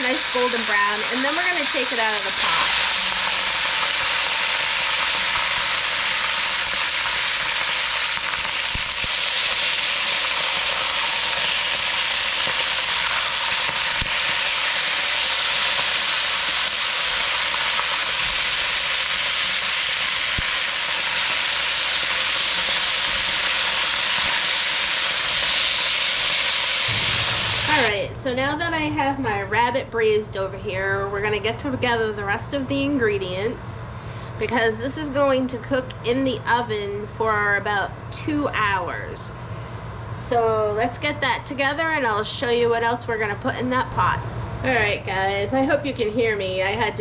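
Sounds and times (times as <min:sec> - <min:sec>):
meat sizzling in hot oil: 0:00.0 - 0:27.9.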